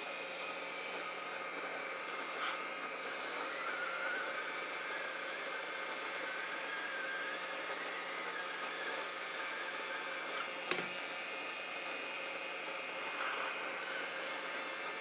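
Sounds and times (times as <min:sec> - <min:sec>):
sharp click: 0:10.7 - 0:10.9.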